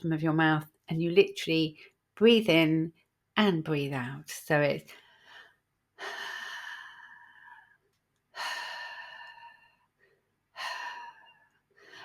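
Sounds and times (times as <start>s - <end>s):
woman breathing through mouth: 5.0s - 12.0s.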